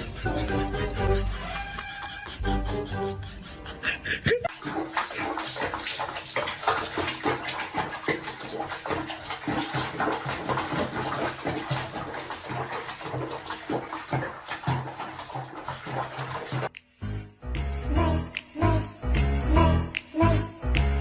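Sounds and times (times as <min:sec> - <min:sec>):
water splashing and sloshing: 0:04.3 - 0:16.8.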